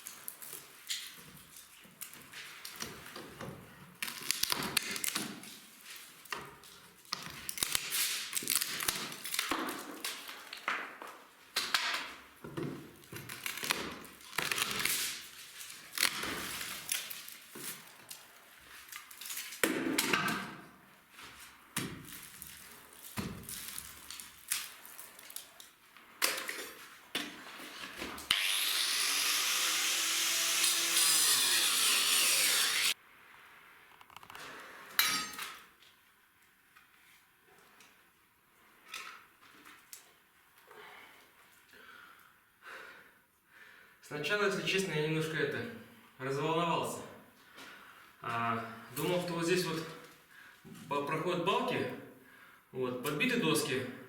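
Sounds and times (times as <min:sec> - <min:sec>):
power tool running: 0:28.3 - 0:33.0.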